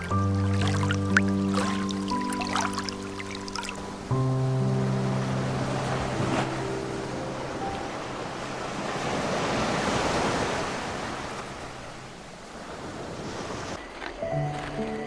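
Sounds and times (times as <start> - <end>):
music: 0.0 - 8.8, 14.1 - 15.0
surf washing in: 0.0 - 13.9.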